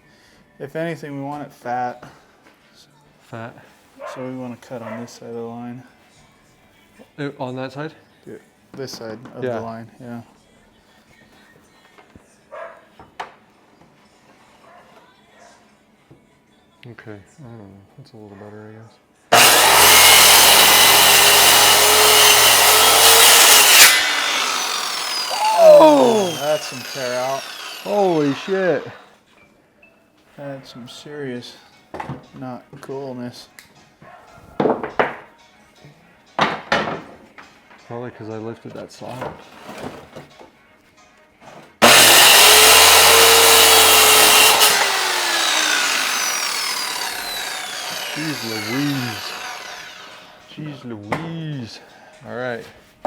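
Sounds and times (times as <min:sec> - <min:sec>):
circular saw cutting wood: 0:19.3 - 0:29.2, 0:41.8 - 0:50.5.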